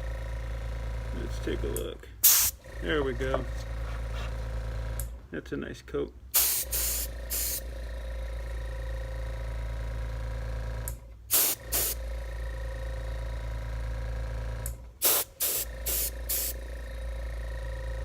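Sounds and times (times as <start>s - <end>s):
small compressor humming: 0.0s - 5.3s, 6.3s - 18.0s
airbrush spraying hiss: 6.4s - 7.6s, 11.3s - 12.0s, 15.0s - 16.6s.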